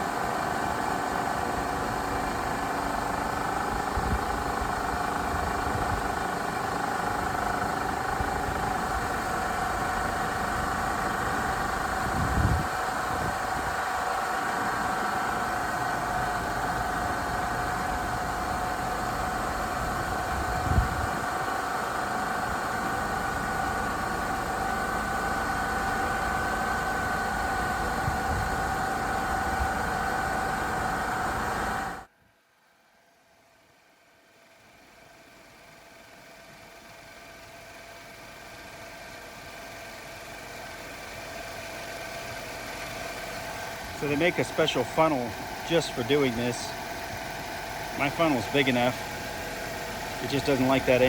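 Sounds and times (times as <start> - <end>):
car engine idling: 0.0 - 32.1, 34.4 - 51.0
high whine: 43.8 - 51.0.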